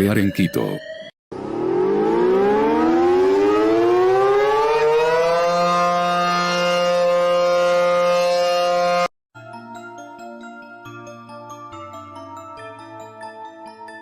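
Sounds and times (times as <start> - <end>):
civil defense siren wailing: 1.3 - 9.1.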